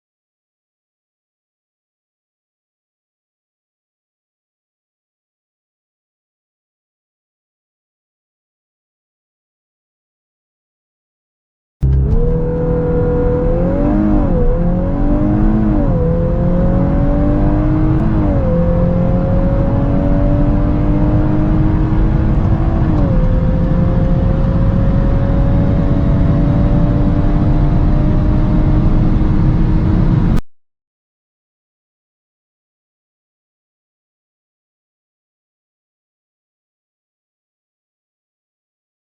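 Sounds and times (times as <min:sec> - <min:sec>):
car engine accelerating through gears: 0:11.8 - 0:30.4.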